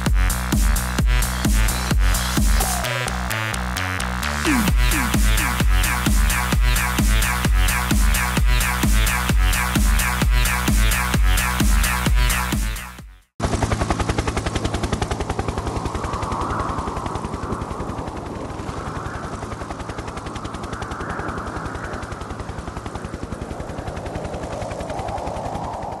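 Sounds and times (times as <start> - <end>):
quadcopter motors buzzing: 13.5 - 25.9.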